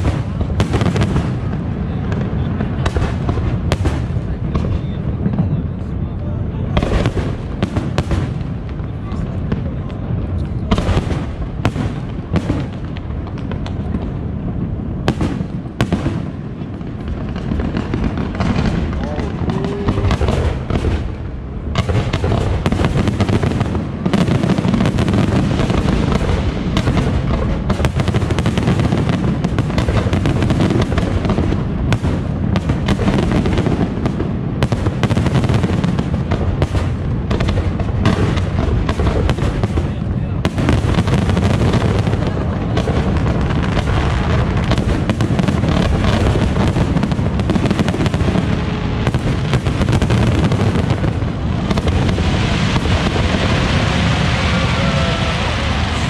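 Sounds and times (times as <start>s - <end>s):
fireworks bangs and crackles: 0.0s - 56.0s.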